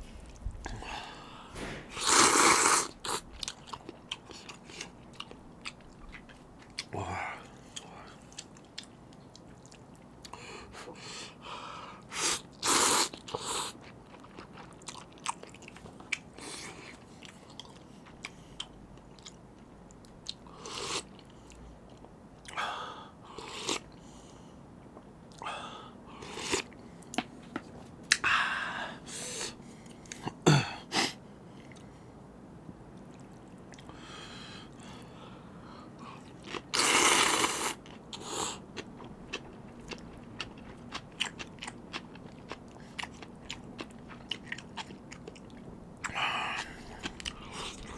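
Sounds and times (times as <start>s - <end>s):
chewing and biting noodles: 12.3s - 19.4s, 36.1s - 47.9s.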